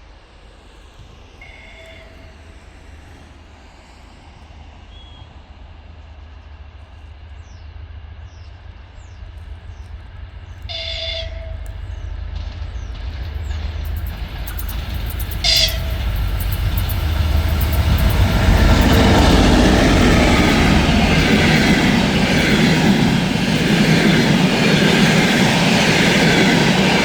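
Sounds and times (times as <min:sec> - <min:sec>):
diesel locomotive rumbling: 0:00.6 - 0:27.0
train horn blasts: 0:10.7 - 0:12.0, 0:15.3 - 0:22.7.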